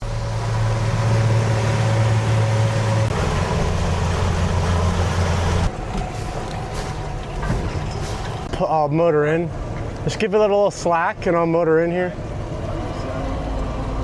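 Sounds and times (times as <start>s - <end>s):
boat engine humming: 0.0s - 10.1s.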